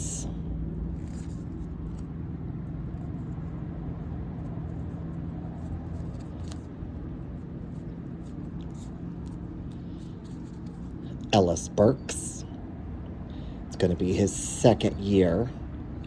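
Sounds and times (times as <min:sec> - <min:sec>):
low background hum: 0:00.0 - 0:16.0
cards clicking and rustling: 0:04.5 - 0:06.8.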